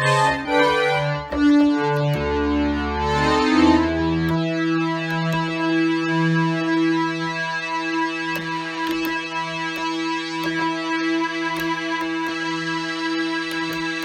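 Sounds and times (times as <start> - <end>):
sharp clicks: 0.0 - 5.7, 8.2 - 14.0
synthesizer holding a note: 0.0 - 7.2.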